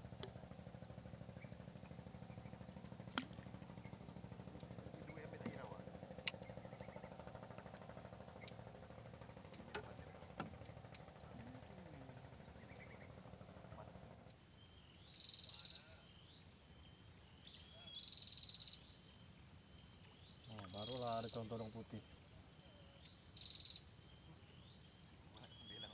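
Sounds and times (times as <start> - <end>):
low motor hum: 0.0 - 14.3
insects calling: 0.0 - 25.9.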